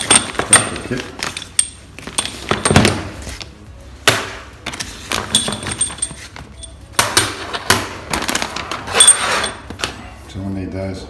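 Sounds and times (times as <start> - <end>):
small metal parts clinking: 0.0 - 2.8, 5.2 - 6.8.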